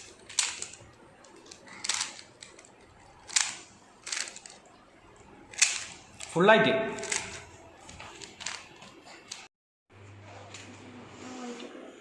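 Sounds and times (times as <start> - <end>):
puzzle cube clicking turns: 0.0 - 4.7, 5.5 - 6.3, 7.0 - 7.4, 8.1 - 8.7.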